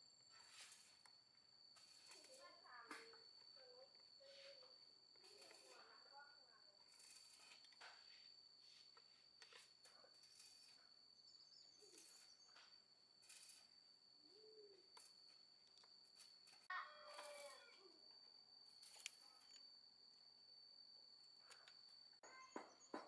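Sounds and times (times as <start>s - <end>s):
steady high-pitched whine: 0.0s - 22.2s.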